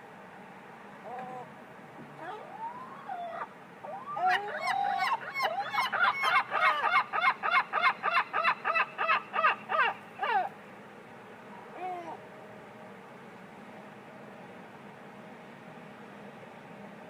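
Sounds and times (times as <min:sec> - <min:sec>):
seagull crying: 0:02.2 - 0:10.5, 0:11.6 - 0:12.2.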